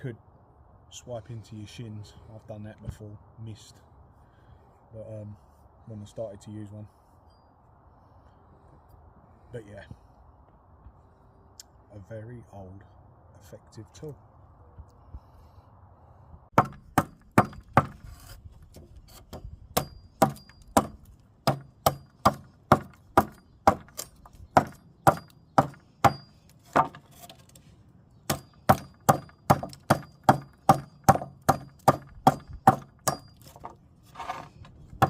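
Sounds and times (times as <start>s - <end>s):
adze chopping wood: 16.5s - 18.1s, 18.7s - 27.4s, 28.2s - 35.0s.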